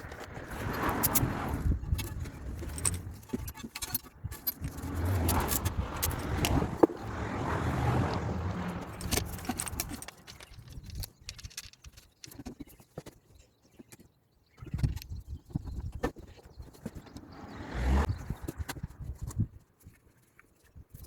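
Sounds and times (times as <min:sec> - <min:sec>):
parts clicking and clattering: 0:00.0 - 0:13.3.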